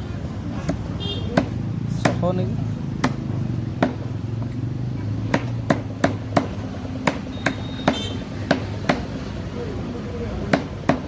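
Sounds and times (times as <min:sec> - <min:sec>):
cleaver chopping on a block: 0:00.6 - 0:02.3, 0:03.0 - 0:09.3, 0:10.3 - 0:11.0.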